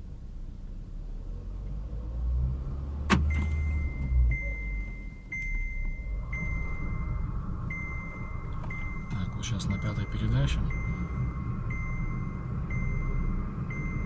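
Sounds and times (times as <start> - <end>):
car engine rumble: 0.0 - 14.0
wheel bearing whine: 3.3 - 14.0.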